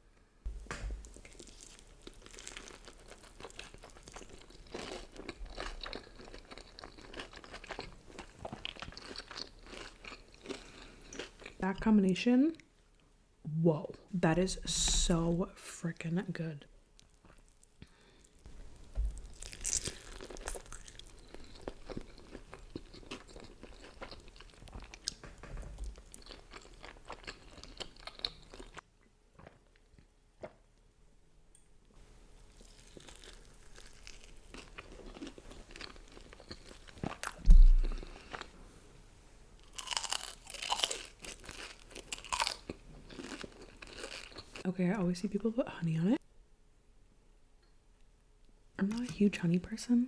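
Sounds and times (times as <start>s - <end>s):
chewing and crunching food: 1.0s - 11.7s, 17.0s - 30.7s, 32.4s - 38.6s, 39.6s - 44.6s
loud thump: 37.4s - 38.0s.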